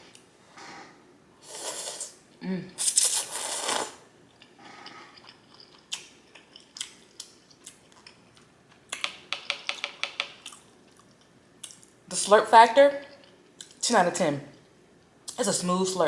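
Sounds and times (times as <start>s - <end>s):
person chewing noodles: 2.8s - 8.9s.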